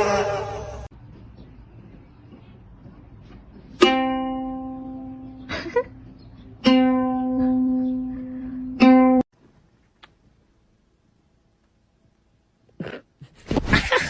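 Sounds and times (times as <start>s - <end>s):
plucked string notes: 3.8s - 9.2s.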